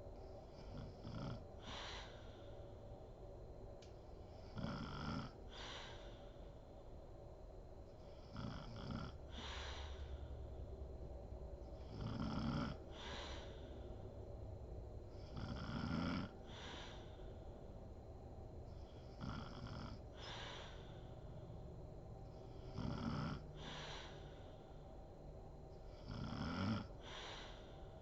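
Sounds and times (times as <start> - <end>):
woman snoring: 0.6 - 2.4, 4.4 - 6.2, 8.1 - 10.2, 11.8 - 13.7, 15.2 - 17.2, 18.8 - 21.2, 22.5 - 24.4, 25.9 - 27.8.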